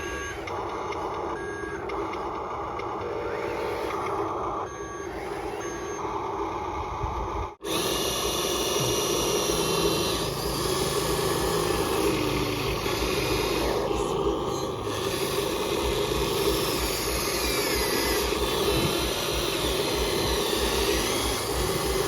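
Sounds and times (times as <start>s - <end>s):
short beeps: 0.0s - 2.3s, 4.7s - 6.1s
toy engine sound effects: 0.0s - 6.8s, 7.6s - 22.0s
electric toy motors whirring: 0.0s - 22.0s.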